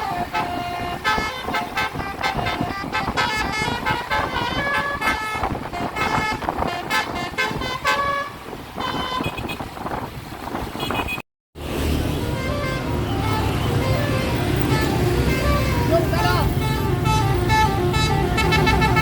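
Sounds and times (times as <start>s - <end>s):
bus horn playing melody: 0.0s - 9.6s, 12.0s - 19.0s.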